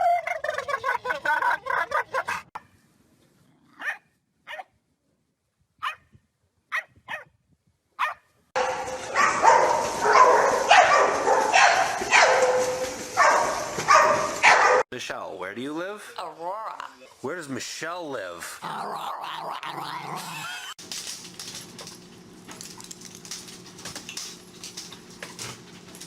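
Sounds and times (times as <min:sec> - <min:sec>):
dog barking and yipping: 0:01.7 - 0:02.6, 0:03.8 - 0:04.7, 0:05.8 - 0:06.0, 0:06.7 - 0:07.3, 0:08.0 - 0:14.8.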